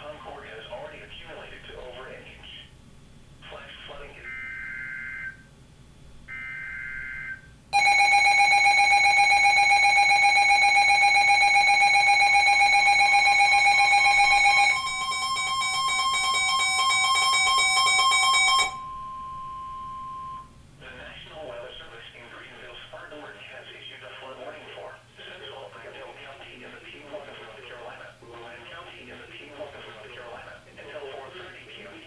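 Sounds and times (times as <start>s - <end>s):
pulsing electronic alarm: 4.2s - 5.5s, 6.3s - 20.6s
steady warning tone: 6.3s - 20.6s.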